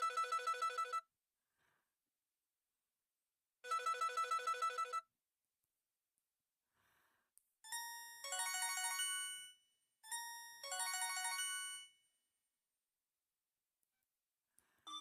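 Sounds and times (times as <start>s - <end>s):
cell phone ringtone chime melody: 7.7s - 12.1s.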